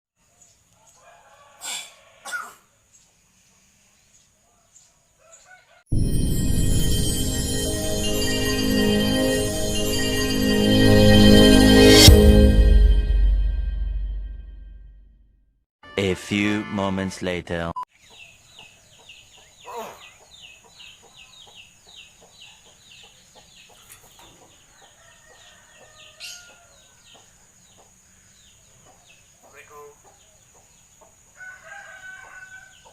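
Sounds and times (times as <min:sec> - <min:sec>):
myna giving human-like coughs: 0:01.6 - 0:02.7
steady high whine: 0:05.9 - 0:13.1
loud music: 0:05.9 - 0:15.0, 0:15.8 - 0:17.4
birds chirping: 0:17.7 - 0:32.9.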